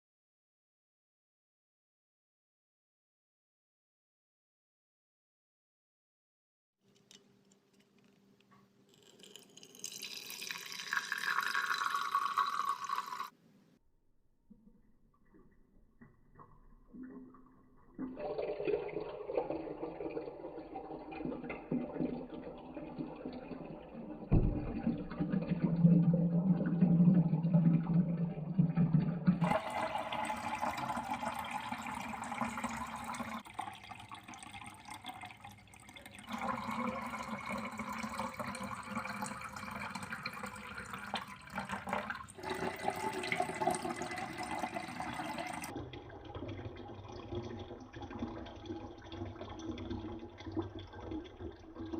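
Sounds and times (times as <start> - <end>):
glass marbles rolling and clattering: 8.9 - 13.3.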